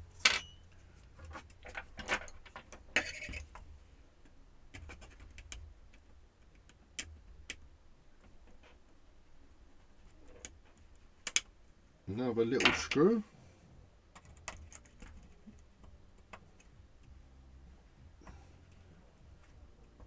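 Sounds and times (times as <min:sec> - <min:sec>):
faint low hum: 0:07.2 - 0:20.0.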